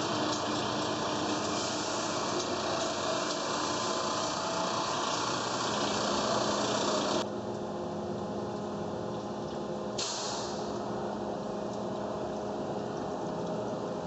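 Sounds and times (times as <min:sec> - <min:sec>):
drilling machine running: 0:00.0 - 0:07.2
high hiss: 0:00.0 - 0:07.2, 0:10.0 - 0:10.8.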